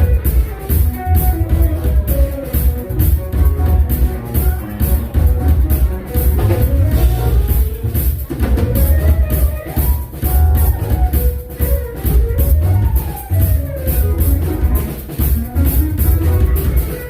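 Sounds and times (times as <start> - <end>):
deep bass line: 0.0 - 9.2
drum kit with cymbals: 0.0 - 17.0
melodic lead line: 0.0 - 17.0.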